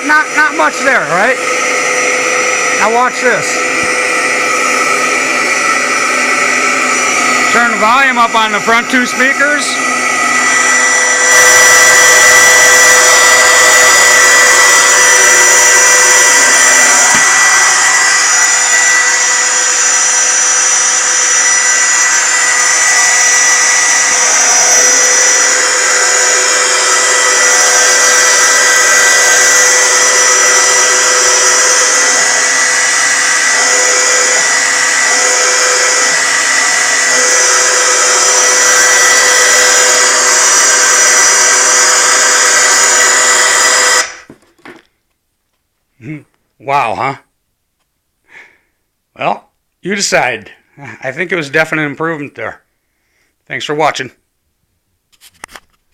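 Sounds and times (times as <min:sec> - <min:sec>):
rushing jet noise: 0:00.0 - 0:44.3
jet turbine whine: 0:00.0 - 0:44.4.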